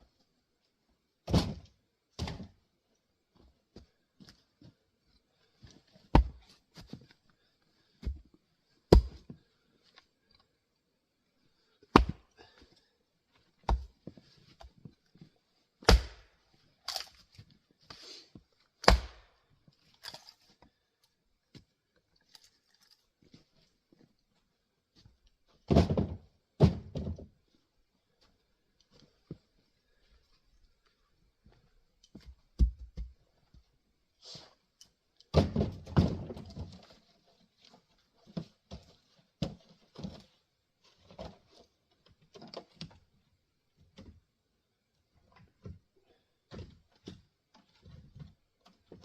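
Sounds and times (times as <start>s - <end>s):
axe chopping wood: 6.1s - 6.4s, 8.9s - 9.3s, 11.9s - 12.3s, 15.8s - 16.3s, 18.8s - 19.3s.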